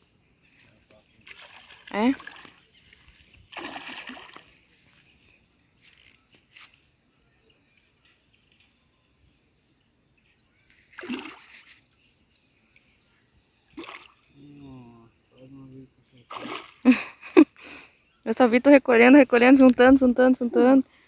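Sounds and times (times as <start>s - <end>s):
fish splashing in water: 1.3s - 2.7s, 3.5s - 4.6s, 11.0s - 11.7s, 13.8s - 14.3s, 16.3s - 16.8s.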